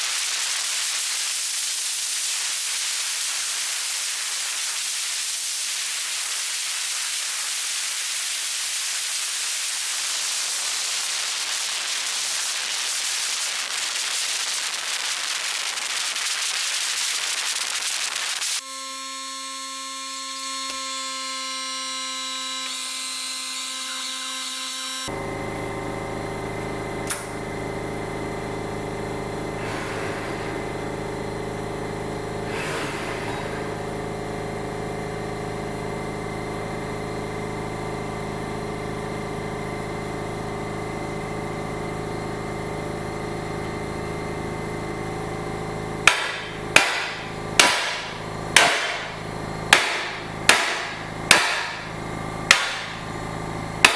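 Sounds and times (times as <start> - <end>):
plasma cutter mechanical drone: 0.0 - 24.2.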